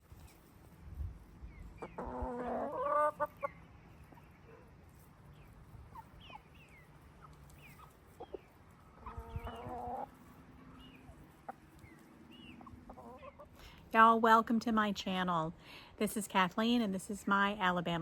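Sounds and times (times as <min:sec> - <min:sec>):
hen clucking call: 0:01.8 - 0:03.6, 0:09.0 - 0:10.2.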